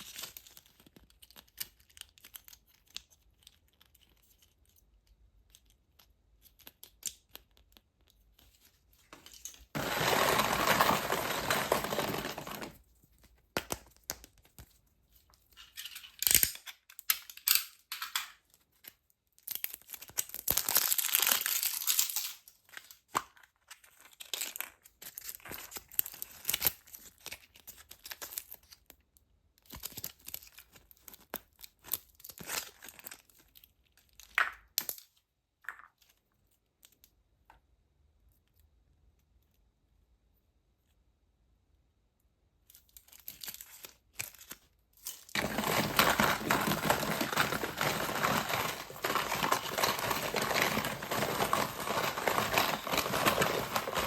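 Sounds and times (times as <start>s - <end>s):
packaging crinkling: 9.8s - 12.8s, 43.1s - 54.0s
packaging tearing: 9.8s - 12.8s, 45.3s - 54.0s.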